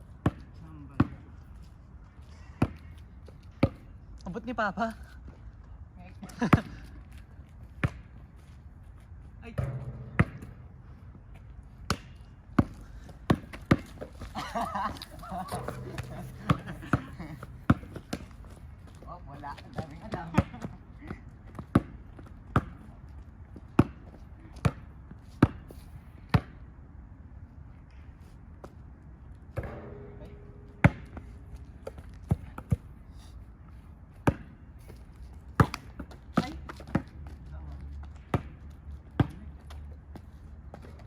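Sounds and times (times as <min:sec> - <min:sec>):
basketballs bouncing on a court: 0:00.2 - 0:01.4, 0:09.6 - 0:11.0, 0:11.9 - 0:25.6, 0:34.2 - 0:34.6, 0:35.6 - 0:37.2, 0:38.1 - 0:39.7.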